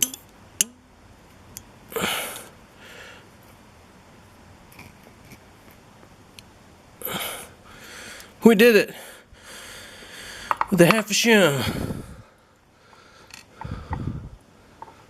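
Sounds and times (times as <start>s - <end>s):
sharp click with ring: 0.0s - 0.8s
breaths through the nose: 11.7s - 15.0s.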